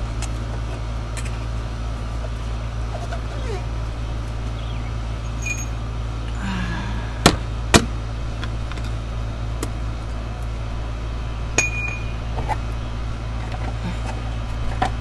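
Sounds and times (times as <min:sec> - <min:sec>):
steady low hum: 0:00.0 - 0:15.0
light metallic clink: 0:11.6 - 0:12.2.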